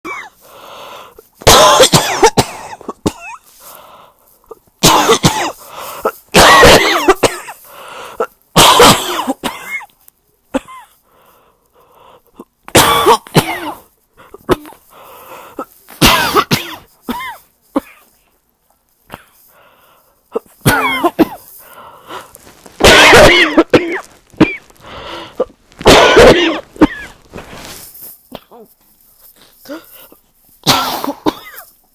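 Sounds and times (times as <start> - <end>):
person coughing harshly: 0.0 - 0.4, 1.4 - 3.9, 4.5 - 9.9, 10.5 - 11.0, 12.4 - 18.1, 20.3 - 27.2, 29.4 - 31.8.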